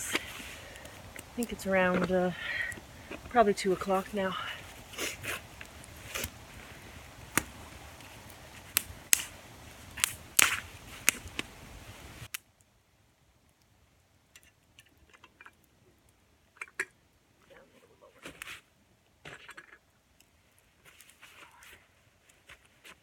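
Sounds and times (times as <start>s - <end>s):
campfire crackling: 0.0s - 23.0s
sharp pops of wood: 7.3s - 7.6s, 8.7s - 9.3s, 10.0s - 11.5s.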